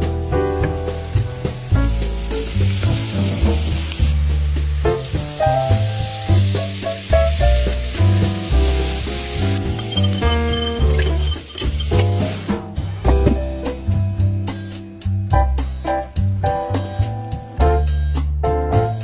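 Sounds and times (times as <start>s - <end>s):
food sizzling in a pan: 0.0s - 12.6s
background music: 0.0s - 19.0s.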